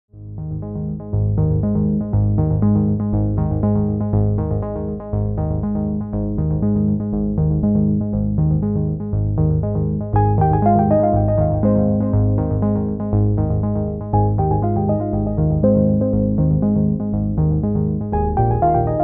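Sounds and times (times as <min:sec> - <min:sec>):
rhythmic bass: 0:00.2 - 0:19.0
synthesizer and keyboard tune: 0:00.2 - 0:19.0.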